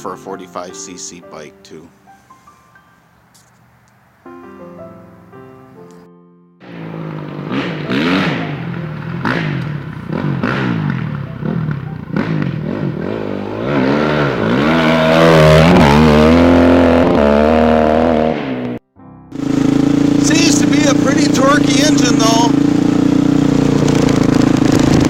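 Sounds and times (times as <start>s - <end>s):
motorcycle engine revving: 6.6s - 25.0s.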